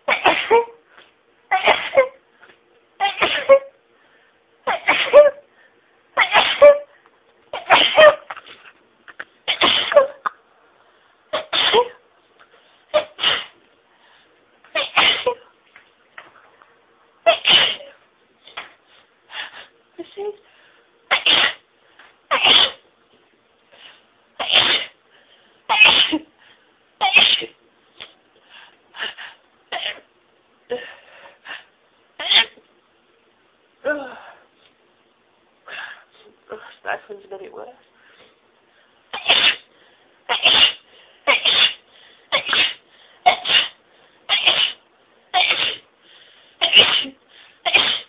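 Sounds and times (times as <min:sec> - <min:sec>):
person sneezing: 0:00.1 - 0:00.8, 0:01.5 - 0:02.2, 0:03.0 - 0:03.8, 0:04.7 - 0:05.4, 0:06.2 - 0:07.0, 0:07.6 - 0:10.4, 0:11.3 - 0:12.0, 0:12.9 - 0:13.6, 0:14.8 - 0:15.4, 0:17.3 - 0:18.7, 0:21.1 - 0:21.6, 0:22.3 - 0:22.8, 0:24.4 - 0:25.0, 0:25.7 - 0:26.3, 0:27.0 - 0:28.2, 0:30.7 - 0:32.6, 0:39.1 - 0:39.7, 0:40.3 - 0:45.9, 0:46.6 - 0:48.0
short breaths: 0:41.8 - 0:43.2, 0:46.0 - 0:46.6.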